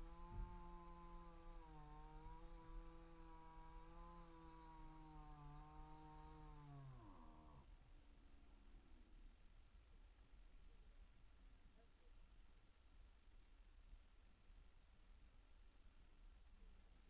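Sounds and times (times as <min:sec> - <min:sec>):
chainsaw engine idling: 0:00.0 - 0:07.6
chainsaw engine winding down: 0:00.0 - 0:07.6.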